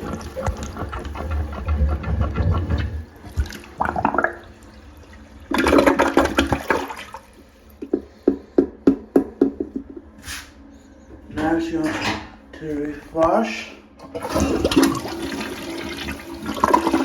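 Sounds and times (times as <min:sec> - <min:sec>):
plunger sloshing water in toilet: 0:00.0 - 0:08.4, 0:14.0 - 0:17.0.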